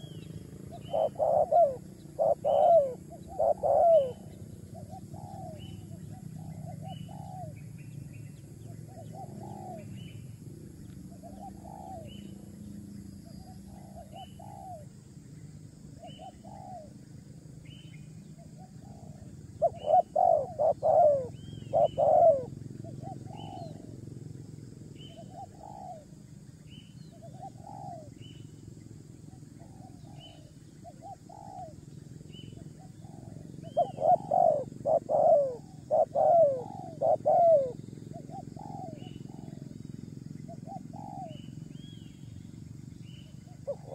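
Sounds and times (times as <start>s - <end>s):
bird hooting: 0.0s - 7.7s, 8.7s - 10.2s, 11.1s - 12.7s, 13.4s - 14.9s, 16.0s - 17.0s, 18.4s - 24.0s, 25.0s - 26.1s, 27.1s - 28.4s, 29.3s - 42.3s, 43.0s - 43.9s
steady low hum: 0.0s - 43.9s.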